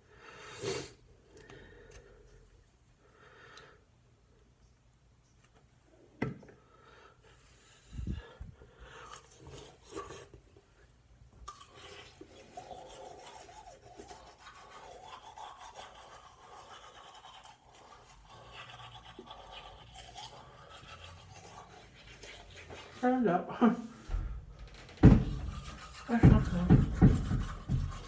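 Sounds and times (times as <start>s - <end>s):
toothbrush scrubbing teeth: 9.0s - 10.4s, 11.4s - 23.2s, 25.3s - 28.0s.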